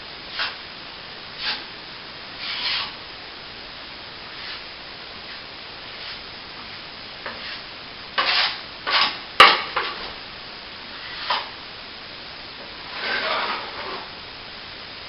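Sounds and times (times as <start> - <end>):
plastering tool scraping: 0.3 - 0.6, 1.4 - 1.7, 2.4 - 3.0, 4.3 - 4.6, 5.3 - 6.2, 7.2 - 9.2, 11.0 - 11.5, 12.9 - 14.1.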